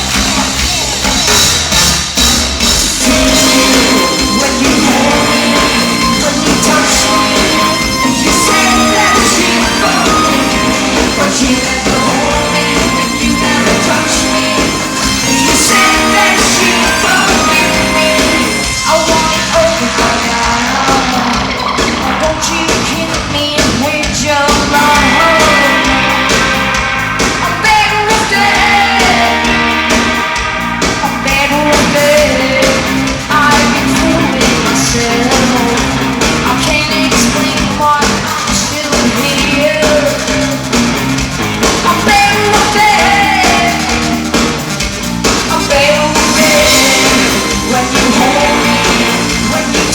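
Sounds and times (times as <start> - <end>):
rock band playing live: 0.0 - 49.9
person singing or shouting: 3.0 - 26.6, 27.4 - 40.5, 41.9 - 44.2.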